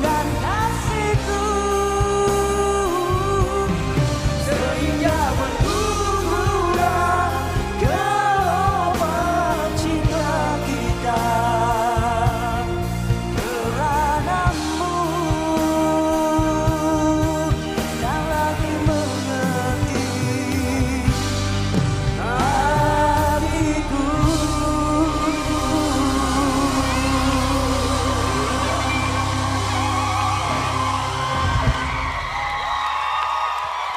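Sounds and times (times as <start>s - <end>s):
person singing: 0.0s - 31.6s
live band playing pop ballad: 0.0s - 33.9s.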